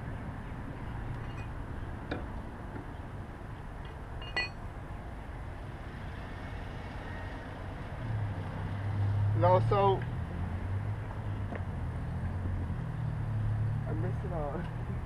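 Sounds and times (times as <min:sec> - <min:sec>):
outdoor background noise: 0:00.0 - 0:15.0
car jack metallic clinks: 0:04.2 - 0:04.6.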